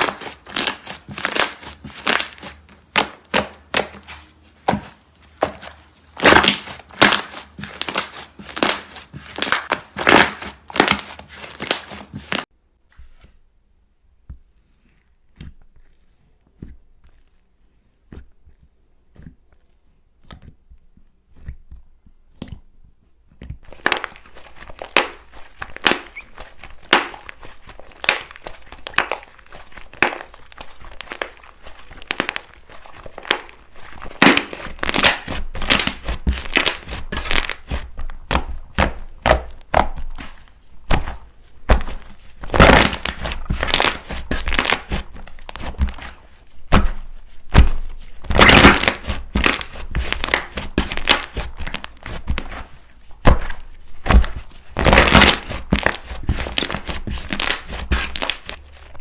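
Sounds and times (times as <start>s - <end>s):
slime crackling and popping: 0.0s - 12.5s, 23.4s - 59.0s
slime squishing crunches: 0.0s - 12.5s, 14.3s - 59.0s.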